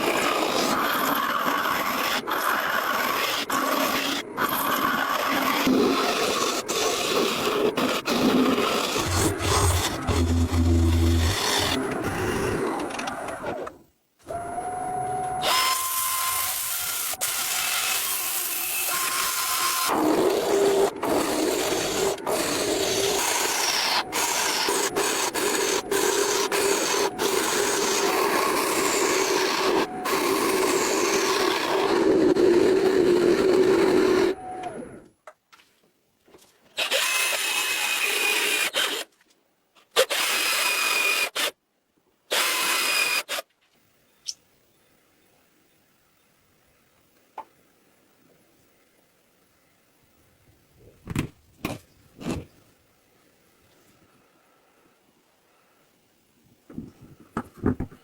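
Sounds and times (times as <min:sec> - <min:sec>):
tool scraping wood: 0:05.2 - 0:13.6
low hum: 0:09.0 - 0:12.6.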